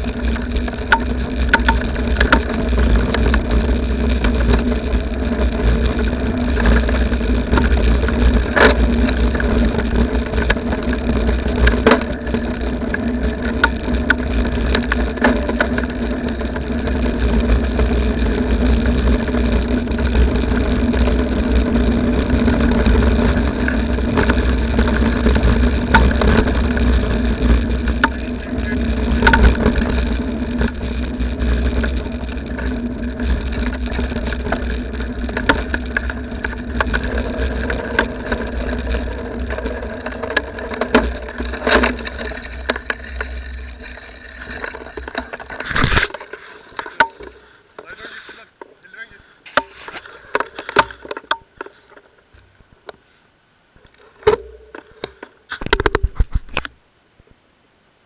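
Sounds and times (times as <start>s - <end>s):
vehicle engine rumbling: 0.0s - 57.6s
sharp knocks and clicks: 0.2s - 4.7s, 5.4s - 15.9s, 24.1s - 28.4s, 29.1s - 47.9s, 53.8s - 56.8s.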